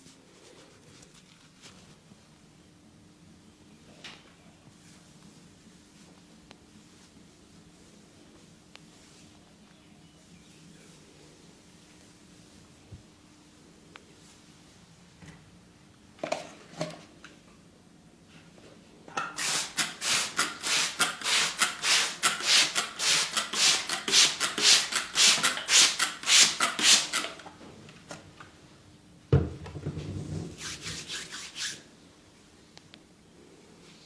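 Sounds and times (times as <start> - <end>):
hands rubbing hair: 30.6 - 31.9.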